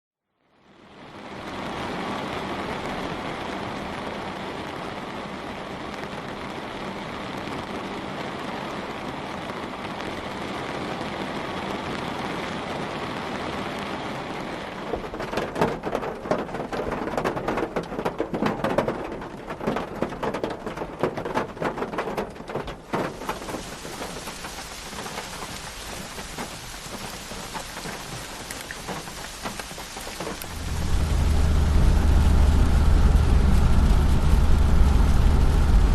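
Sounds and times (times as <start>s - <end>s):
rain on a car roof: 0.4s - 35.9s
heavy drops hitting roof: 14.9s - 30.7s
low hum: 30.4s - 35.9s.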